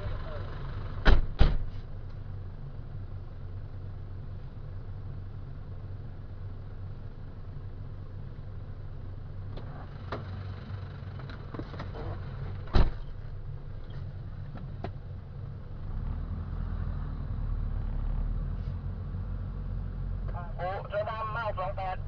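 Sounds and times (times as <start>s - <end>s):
vehicle engine idling: 0.0s - 16.0s, 17.2s - 22.0s
loud sharp thump: 1.0s - 1.8s, 12.7s - 13.0s.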